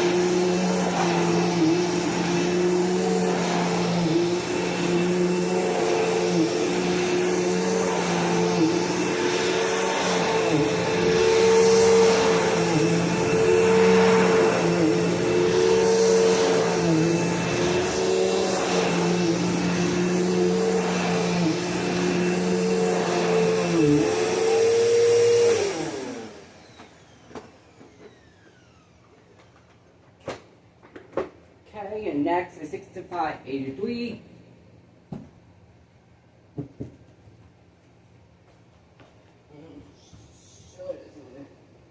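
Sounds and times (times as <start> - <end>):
vacuum motor winding down: 0.0 - 29.2
vacuum cleaner motor hum: 0.0 - 29.8.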